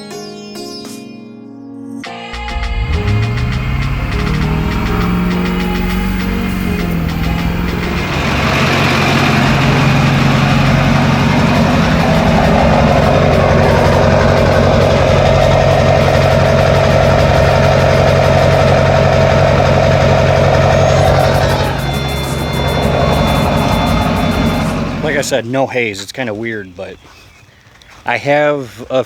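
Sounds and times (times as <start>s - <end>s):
pickup truck engine running: 2.4s - 25.4s.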